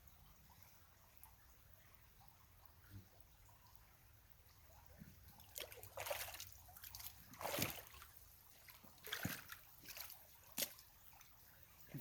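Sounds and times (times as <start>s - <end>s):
creek water sloshing and splashing: 4.5s - 12.0s.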